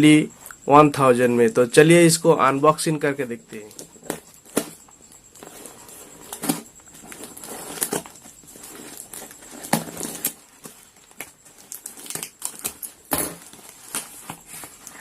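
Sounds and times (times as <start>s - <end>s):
packaging crinkling and tearing: 6.2s - 15.0s.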